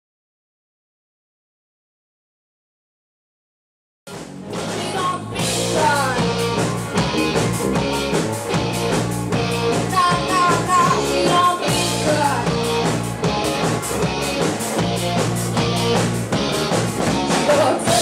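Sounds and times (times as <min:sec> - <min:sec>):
rock band playing live: 0:04.1 - 0:18.0.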